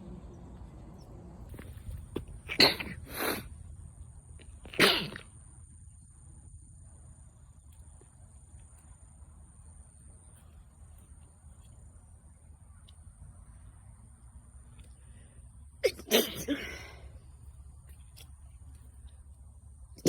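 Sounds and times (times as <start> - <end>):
person sneezing: 2.5 - 3.5, 4.7 - 5.3, 15.8 - 17.0.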